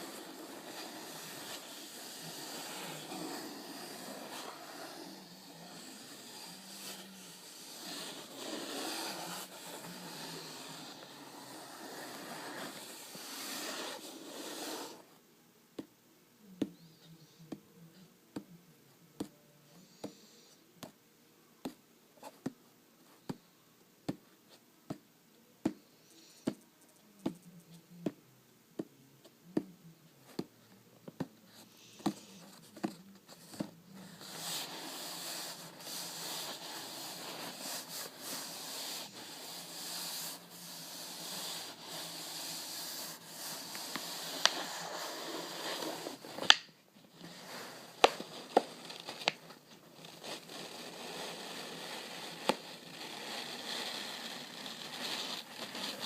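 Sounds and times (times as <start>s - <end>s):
rubbing and crinkling: 31.5s - 56.0s.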